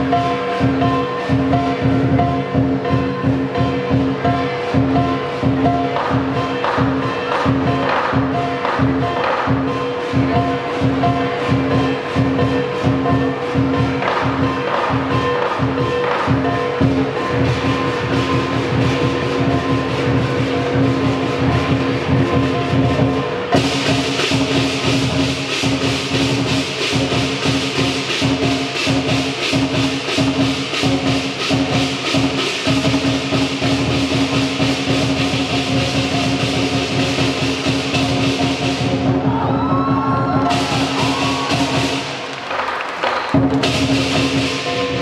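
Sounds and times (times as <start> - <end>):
crashing cymbals: 0.0 - 39.2, 40.4 - 42.4, 43.6 - 45.0
drum beat: 0.0 - 45.0
pitched musical accompaniment: 43.4 - 45.0.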